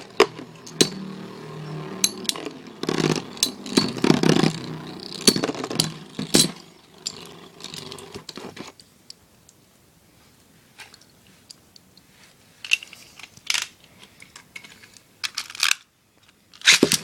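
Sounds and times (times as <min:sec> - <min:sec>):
spinning tops clashing: 0:00.0 - 0:08.3
spinning tops whirring: 0:00.0 - 0:08.3.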